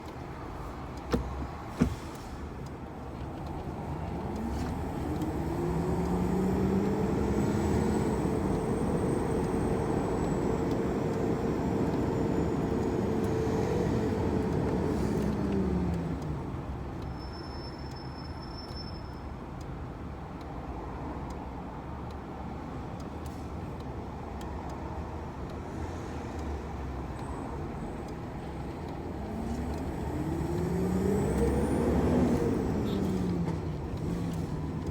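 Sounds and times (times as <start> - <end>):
truck diesel engine pulling: 0.0 - 16.8, 27.3 - 34.9.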